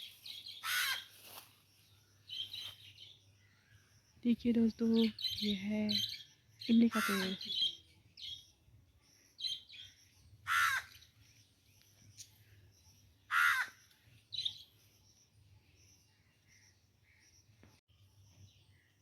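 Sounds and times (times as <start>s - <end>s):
harsh bird calls: 0.0s - 1.2s, 4.9s - 8.4s, 9.4s - 11.1s, 13.3s - 14.6s.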